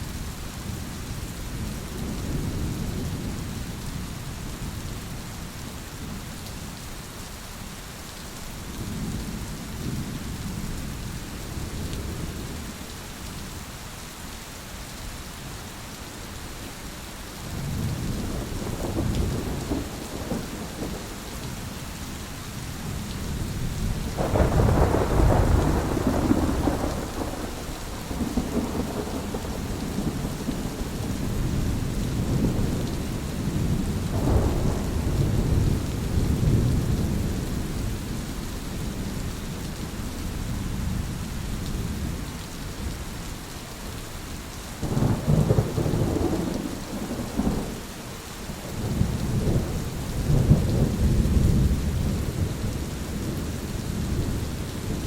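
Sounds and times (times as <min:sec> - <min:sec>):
steady rain: 0:00.0 - 0:55.0
rolling thunder: 0:17.6 - 0:21.6, 0:22.8 - 0:38.2, 0:44.8 - 0:47.8, 0:48.6 - 0:55.0.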